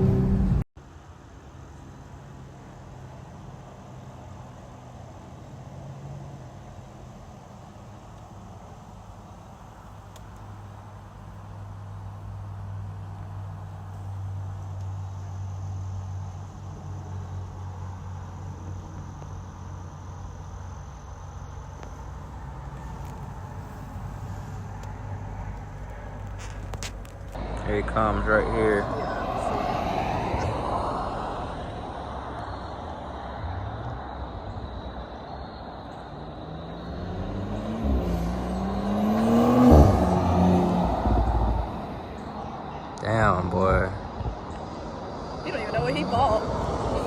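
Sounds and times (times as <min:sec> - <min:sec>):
car engine accelerating hard: 0:00.0 - 0:00.6, 0:11.5 - 0:47.0
low rumble: 0:00.0 - 0:00.7, 0:20.2 - 0:47.0
crickets trilling: 0:01.6 - 0:47.0.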